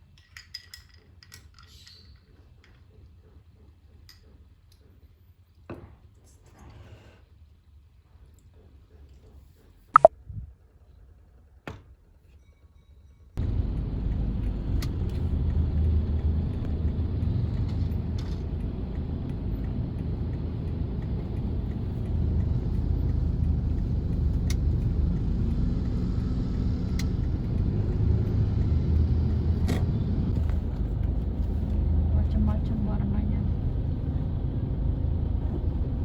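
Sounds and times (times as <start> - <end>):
vehicle low rumble: 13.4 - 36.0.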